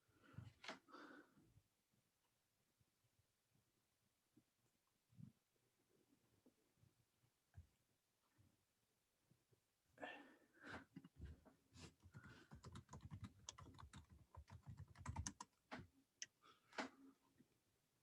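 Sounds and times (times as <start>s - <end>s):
rapid small clicks and taps: 11.9s - 16.9s.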